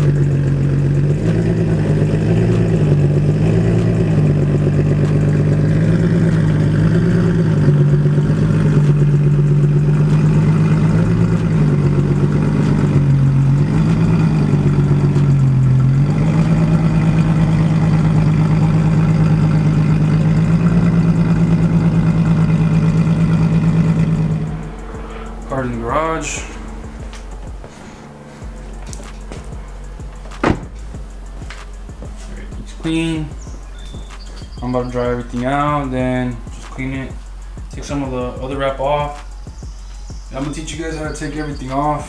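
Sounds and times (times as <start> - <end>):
car engine running: 0.0 - 42.0.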